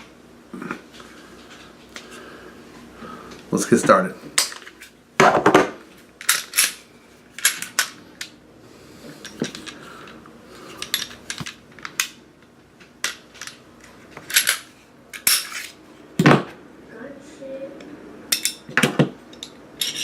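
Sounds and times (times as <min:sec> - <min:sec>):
pistol parts clicking and clacking: 0:06.2 - 0:06.8, 0:13.0 - 0:15.8.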